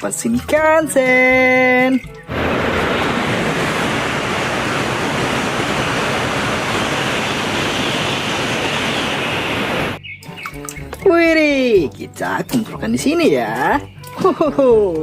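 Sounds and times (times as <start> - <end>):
spraying water rushing: 2.2 - 10.0.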